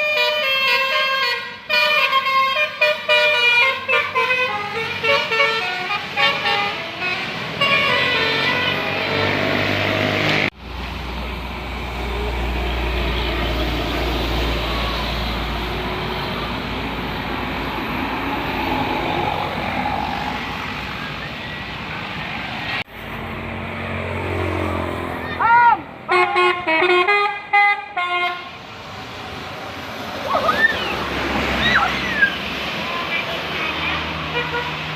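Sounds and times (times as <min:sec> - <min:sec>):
multi-tone bus horn: 0:00.0 - 0:10.5, 0:26.1 - 0:28.6, 0:33.2 - 0:34.9
road noise: 0:00.0 - 0:34.9.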